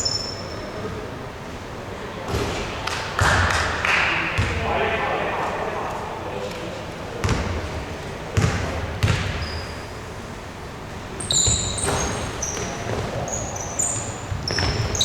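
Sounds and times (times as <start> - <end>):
basketball bouncing: 7.2 - 7.7, 8.4 - 9.5
sneakers squeaking on hardwood: 8.4 - 10.1, 11.1 - 15.0.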